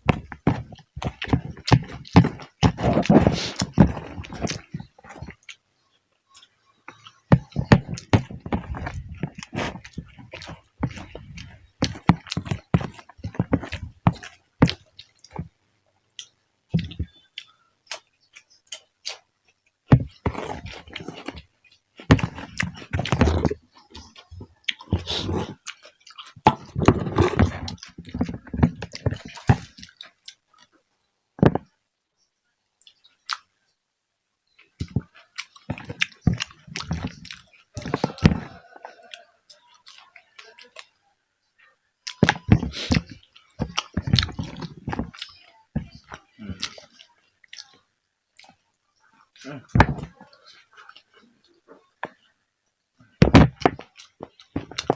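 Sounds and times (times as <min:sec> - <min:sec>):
person chewing and crunching: 0:00.1 - 0:05.6, 0:06.3 - 0:15.5, 0:16.2 - 0:19.2, 0:20.0 - 0:21.4, 0:22.0 - 0:30.7, 0:34.8 - 0:40.9, 0:42.0 - 0:47.8, 0:53.4 - 0:54.9.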